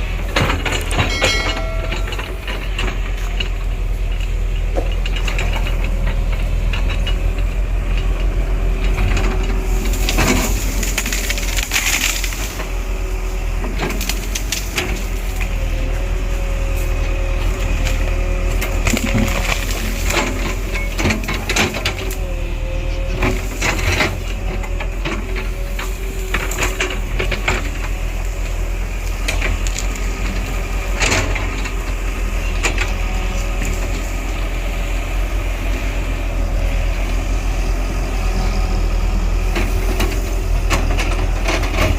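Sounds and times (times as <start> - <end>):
clanks knocks and scraping: 0.0 - 12.7, 16.7 - 28.0, 39.5 - 41.9
diesel machine running: 0.0 - 41.9.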